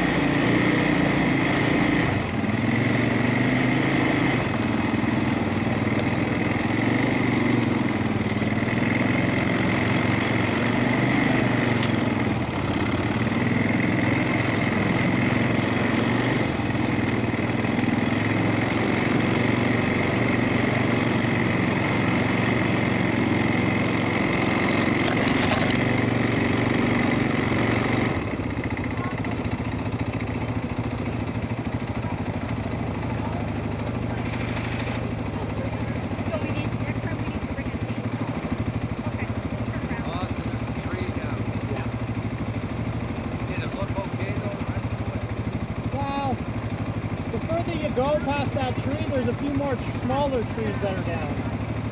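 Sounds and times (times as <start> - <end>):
atv engine running at low speed: 0.0 - 51.9.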